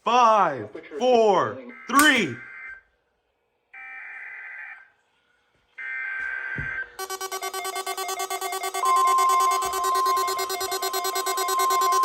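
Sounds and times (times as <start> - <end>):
rapidly pulsing alert tones: 7.0 - 12.0.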